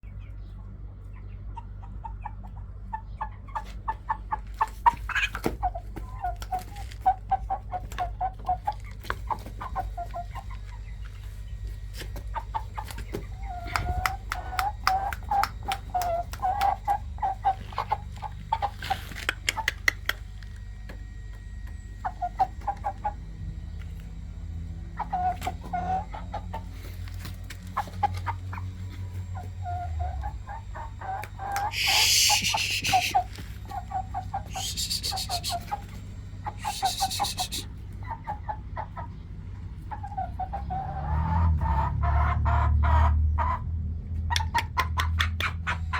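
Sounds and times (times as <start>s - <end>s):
chicken clucking: 0.2s - 20.4s, 22.0s - 23.8s, 24.8s - 45.9s
sharp clicks: 19.2s - 20.3s.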